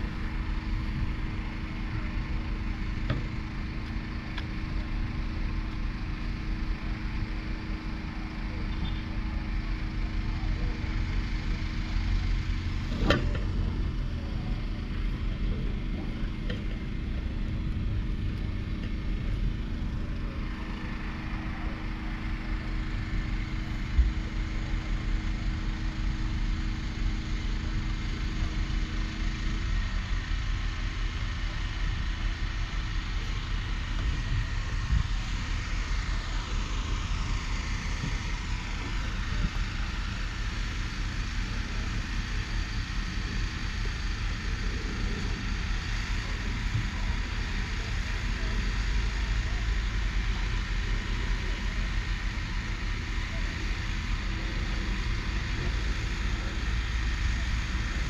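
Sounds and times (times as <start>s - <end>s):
engine rumbling: 0.0s - 58.0s.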